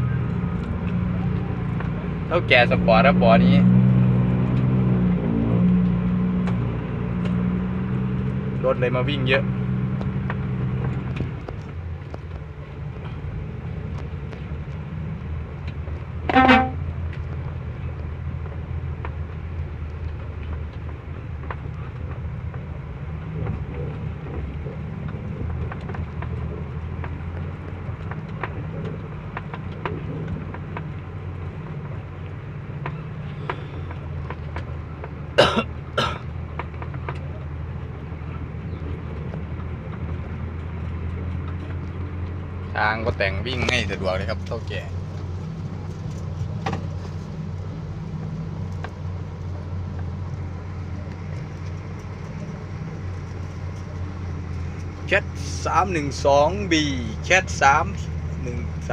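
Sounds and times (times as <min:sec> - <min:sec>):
heavy truck engine running: 0:00.0 - 0:58.9
truck horn toots: 0:16.3 - 0:16.9.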